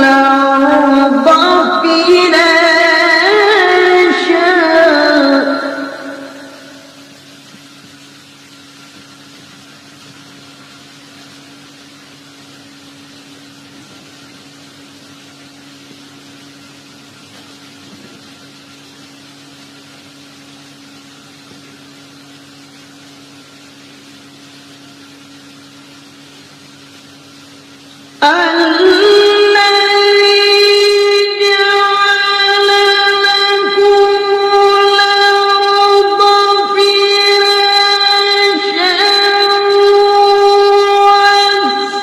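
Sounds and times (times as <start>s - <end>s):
loud singing: 0.0s - 6.8s
steady low hum with hiss: 0.0s - 42.0s.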